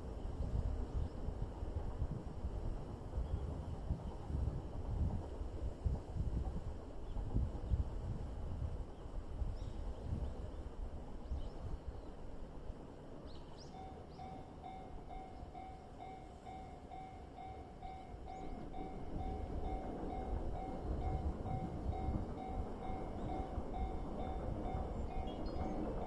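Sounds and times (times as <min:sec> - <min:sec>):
freight train rumble: 0:00.0 - 0:26.0
level crossing warning bell: 0:13.8 - 0:26.0.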